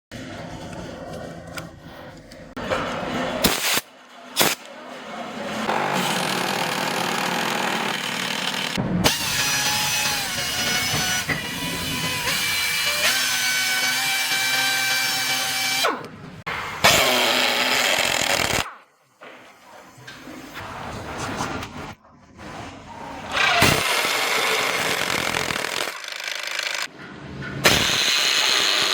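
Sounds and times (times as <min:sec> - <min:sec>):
power screwdriver running: 0:23.4 - 0:26.9.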